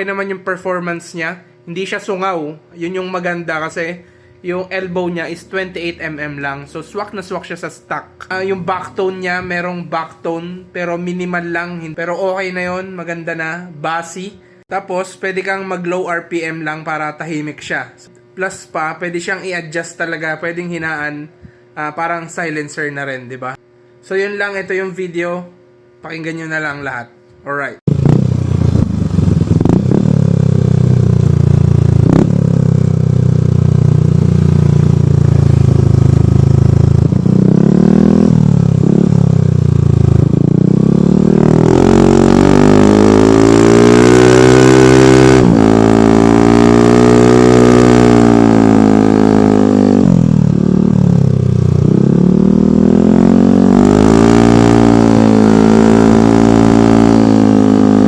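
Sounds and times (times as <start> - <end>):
scooter engine idling and revving: 27.9 - 58.0.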